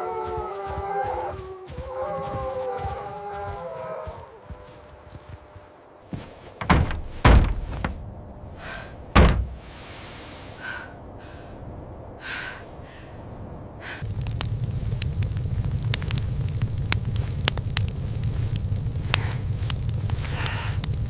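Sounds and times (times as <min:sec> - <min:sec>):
soft scraping or rustling: 0:01.3 - 0:08.1, 0:09.4 - 0:10.9
heavy thuds and knocks: 0:06.1 - 0:08.1, 0:09.1 - 0:09.6.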